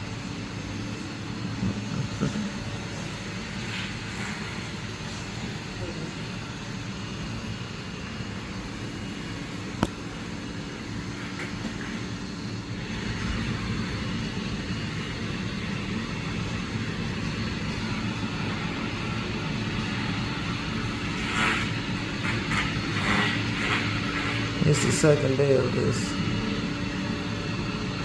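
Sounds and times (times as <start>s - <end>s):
robot vacuum motor and brush hum: 19.8s - 25.0s.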